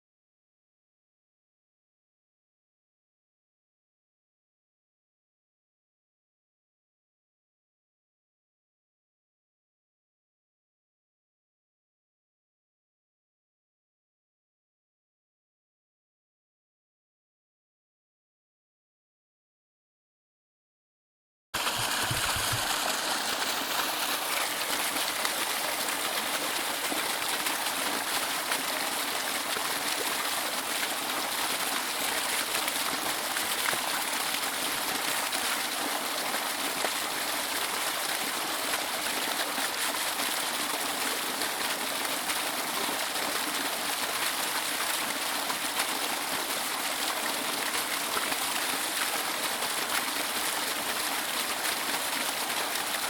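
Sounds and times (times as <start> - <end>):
waterfall rushing: 21.6 - 34.0.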